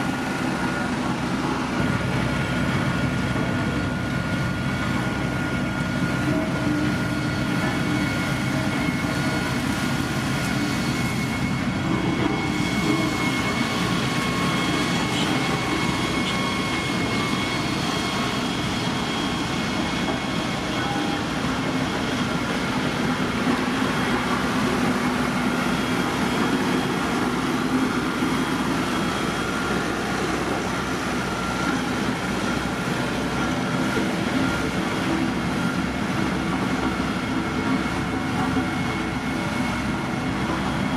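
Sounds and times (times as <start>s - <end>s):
diesel engine rumbling: 0.0s - 40.9s
high whining tones: 5.6s - 35.8s.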